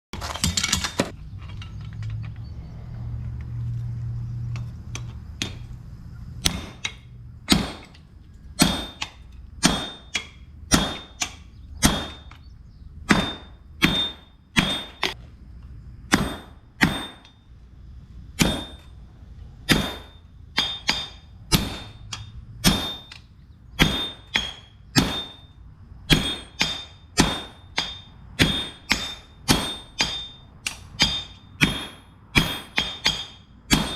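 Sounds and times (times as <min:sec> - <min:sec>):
low hum: 0:00.6 - 0:32.5
hammer blows on steel anvil: 0:13.1 - 0:15.2, 0:26.1 - 0:33.9.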